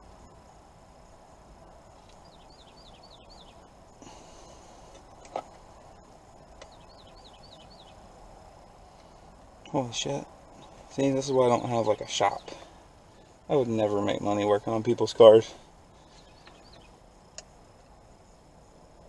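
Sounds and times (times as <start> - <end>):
quiet background noise: 0.0 - 19.0
small bird chirping: 1.6 - 17.8.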